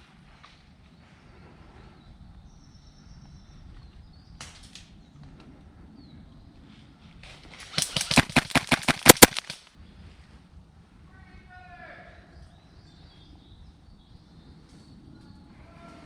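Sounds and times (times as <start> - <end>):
airsoft gun rapid shots: 7.6 - 9.7.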